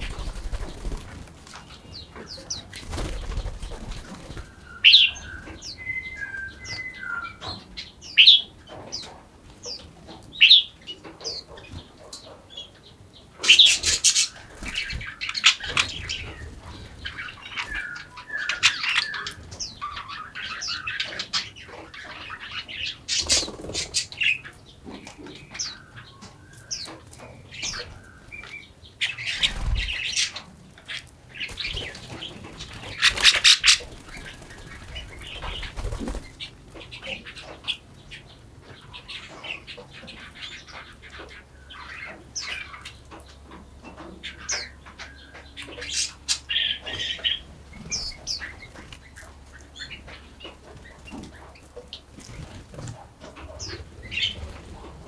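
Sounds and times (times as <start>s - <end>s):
wings fluttering: 0.0s - 5.7s, 13.4s - 20.2s, 23.1s - 24.4s, 29.0s - 37.0s, 50.8s - 55.0s
small birds chirping: 0.0s - 55.0s.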